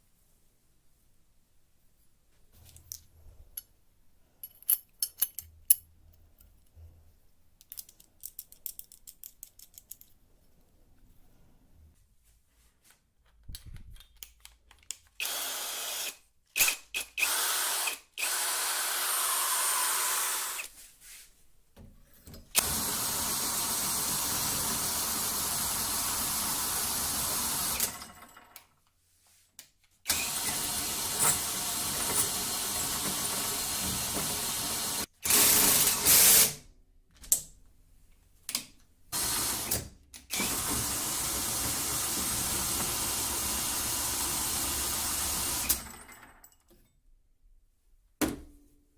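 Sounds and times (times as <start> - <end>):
handheld power tool running: 15.2 - 20.7, 22.6 - 28.2, 30.1 - 36.5, 39.2 - 46.0.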